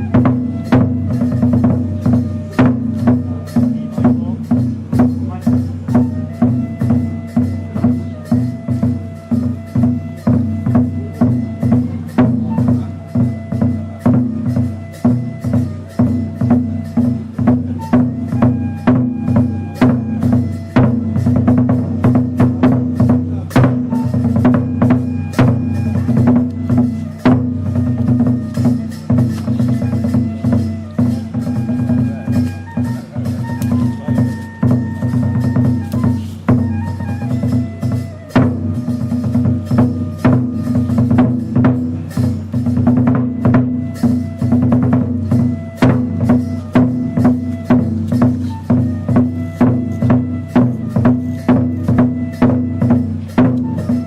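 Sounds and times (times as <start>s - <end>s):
heavy drum beat: 0.0s - 54.0s
sharp percussion strikes: 0.0s - 54.0s.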